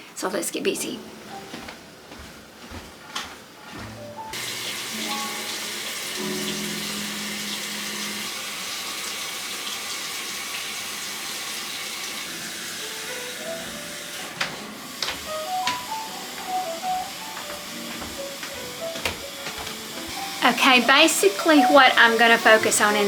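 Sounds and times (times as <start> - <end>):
light background music: 0.2 - 2.9, 3.7 - 8.3, 12.3 - 23.0
water running from tap into sink: 4.3 - 23.0.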